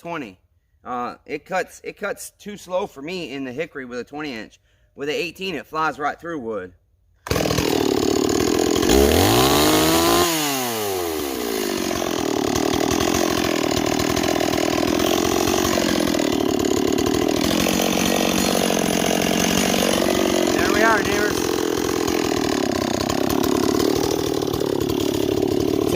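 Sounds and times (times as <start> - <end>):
chainsaw running: 7.2 - 25.9.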